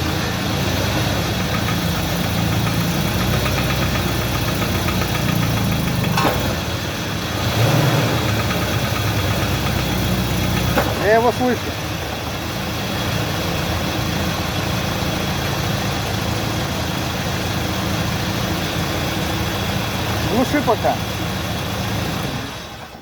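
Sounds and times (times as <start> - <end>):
rhythmic engine knock: 0.0 - 7.2, 8.1 - 12.5
engine running under load: 0.0 - 23.0.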